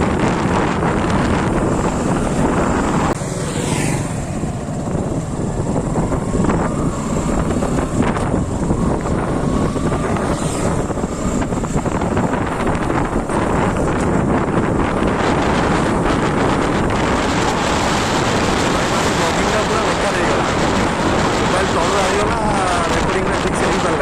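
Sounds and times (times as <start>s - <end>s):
motorcycle engine: 0.0s - 24.0s
road noise: 0.0s - 24.0s
wind buffeting microphone: 0.0s - 24.0s.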